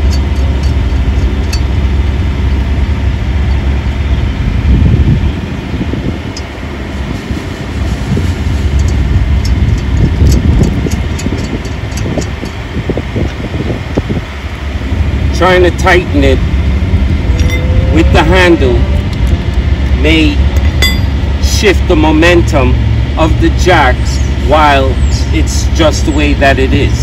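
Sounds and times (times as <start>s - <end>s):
road traffic rumble: 0.0s - 27.0s
lug nuts clicking onto studs: 8.8s - 12.6s.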